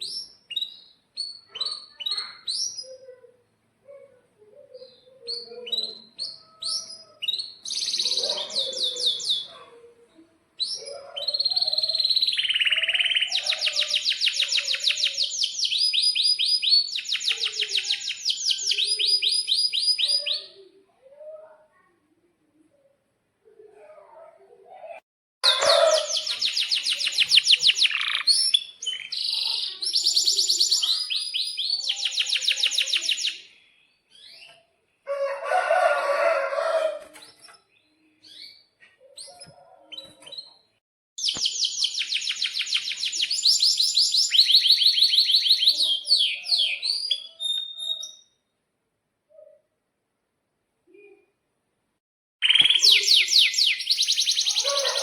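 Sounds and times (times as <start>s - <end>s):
canary singing trills: 0.0s - 3.2s, 4.6s - 9.8s, 10.6s - 20.8s, 25.4s - 34.7s, 41.2s - 48.4s, 52.4s - 55.0s.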